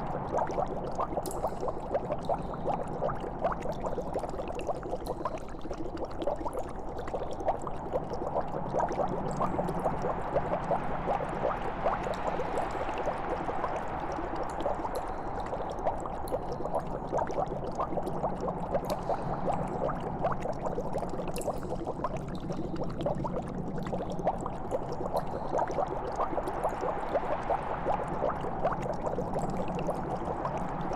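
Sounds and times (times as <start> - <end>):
liquid bubbling: 0.0 - 30.9.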